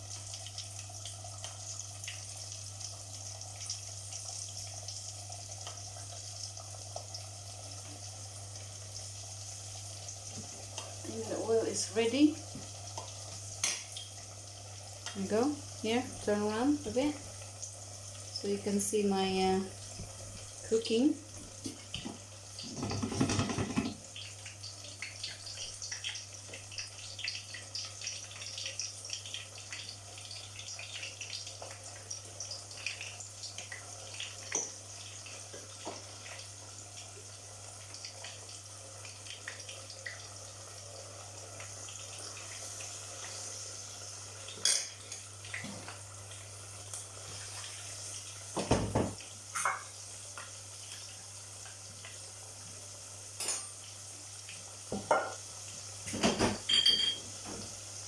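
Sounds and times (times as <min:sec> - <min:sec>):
tap water running: 0:00.0 - 0:58.0
dishes and cutlery clinking: 0:44.6 - 0:45.3, 0:56.1 - 0:57.6.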